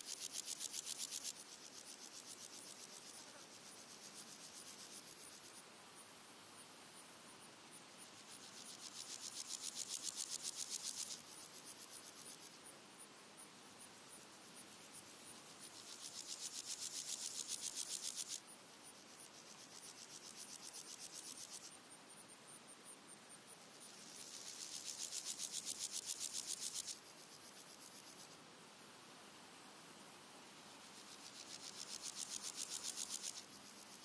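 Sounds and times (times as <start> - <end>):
grasshoppers stridulating: 0.0 - 6.1, 8.0 - 12.6, 14.0 - 21.9, 23.7 - 28.4, 30.4 - 34.0
faint high insect ticking: 0.0 - 34.0.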